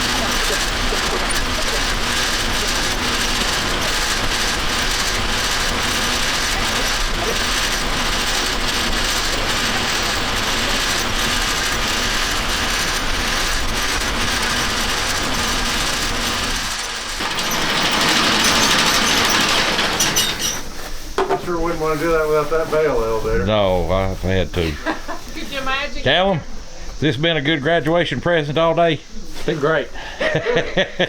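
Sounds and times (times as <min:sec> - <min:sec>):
hay elevator chain clattering: 0:00.0 - 0:26.0.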